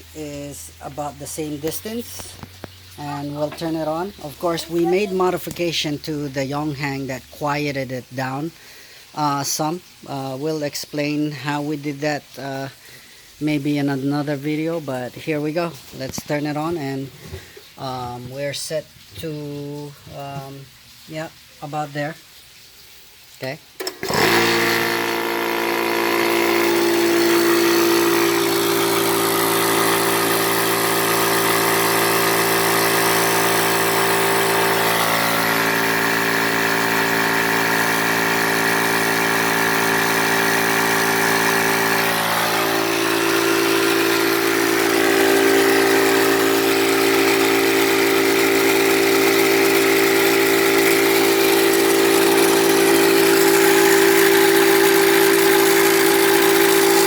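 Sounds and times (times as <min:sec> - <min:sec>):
air compressor running: 0:23.8 - 0:57.0.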